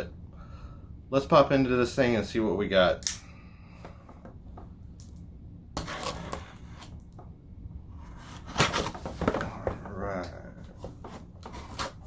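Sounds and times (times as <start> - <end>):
cardboard packaging rustling: 8.0 - 12.0.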